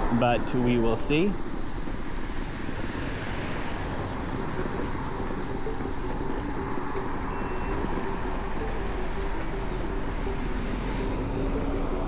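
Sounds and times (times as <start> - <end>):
electric scooter rolling on pavement: 1.0 - 12.0.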